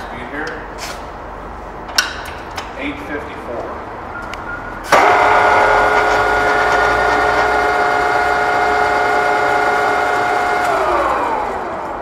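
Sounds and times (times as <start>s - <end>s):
drill gear whine and rumble: 5.0s - 12.0s.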